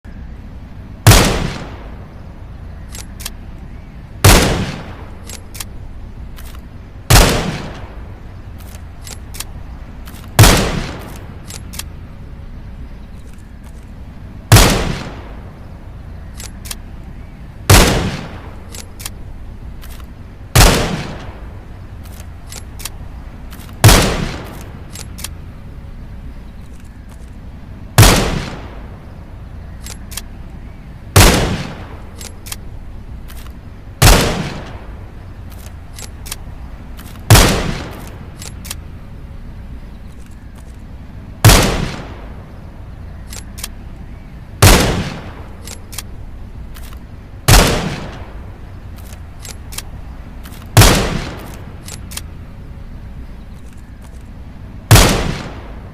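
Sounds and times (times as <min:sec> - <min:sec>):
rifle shots: 0:01.0 - 0:02.2, 0:04.2 - 0:12.0, 0:14.4 - 0:15.6, 0:17.6 - 0:25.5, 0:27.9 - 0:29.1, 0:31.1 - 0:39.0, 0:41.4 - 0:42.6, 0:44.6 - 0:52.4, 0:54.8 - 0:55.9
faint clicks: 0:02.8 - 0:03.7, 0:05.2 - 0:06.8, 0:07.7 - 0:12.1, 0:16.1 - 0:17.1, 0:18.2 - 0:20.4, 0:21.0 - 0:27.8, 0:29.5 - 0:30.8, 0:31.8 - 0:33.9, 0:34.5 - 0:41.2, 0:42.9 - 0:44.5, 0:45.1 - 0:54.7.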